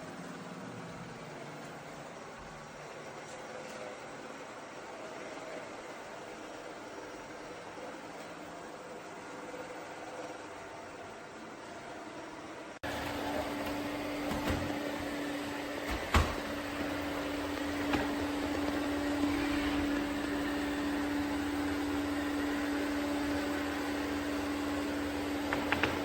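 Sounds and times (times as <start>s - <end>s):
robot vacuum motor hum: 12.8s - 26.0s.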